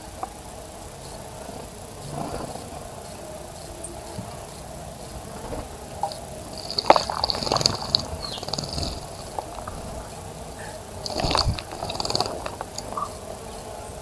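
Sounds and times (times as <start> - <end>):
high bird chirps: 6.5 - 9.8
birds splashing in water: 6.5 - 13.1.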